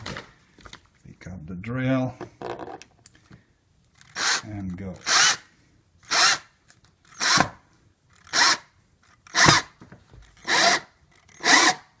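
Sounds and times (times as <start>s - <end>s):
cordless drill driving a screw: 4.0s - 4.4s, 5.0s - 5.4s, 6.0s - 6.5s, 7.1s - 7.5s, 8.1s - 8.7s, 9.3s - 11.9s.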